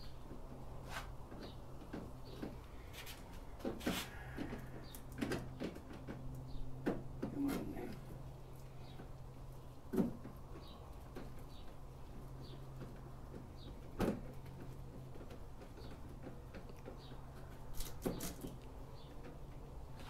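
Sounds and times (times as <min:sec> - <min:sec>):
plastic windshield knocking and clicking: 0:09.9 - 0:11.5, 0:12.4 - 0:19.7.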